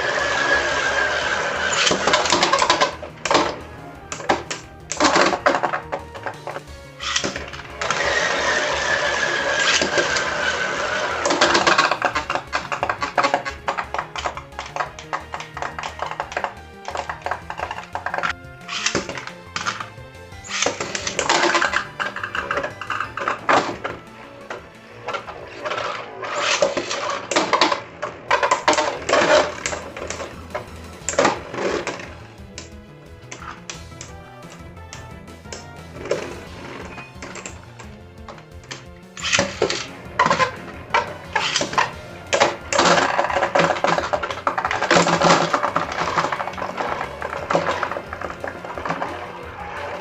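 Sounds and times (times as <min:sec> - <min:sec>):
spinning tops whirring: 0:00.0 - 0:50.0
spinning tops clattering together: 0:37.2 - 0:49.4.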